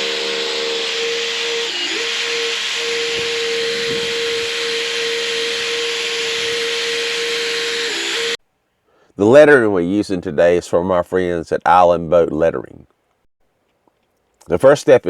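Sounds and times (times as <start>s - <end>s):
drill motor whine: 0.0s - 8.4s.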